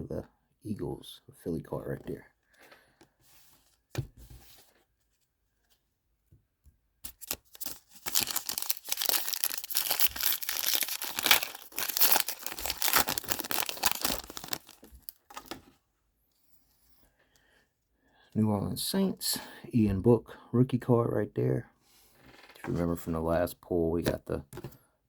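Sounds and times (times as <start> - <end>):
wrapper tearing and crinkling: 7.1 - 15.5.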